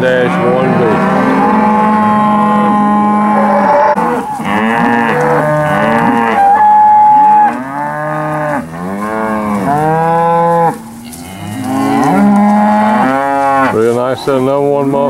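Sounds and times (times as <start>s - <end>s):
cattle mooing: 0.0s - 14.0s.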